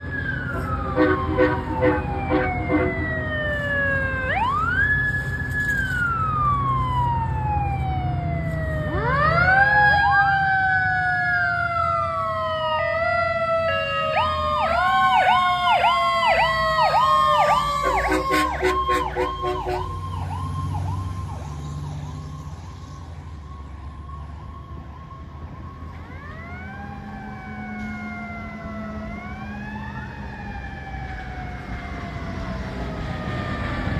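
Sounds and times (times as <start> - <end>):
electronic siren wailing: 0.0 - 21.9
train horn blasts: 0.6 - 3.1, 17.5 - 20.0.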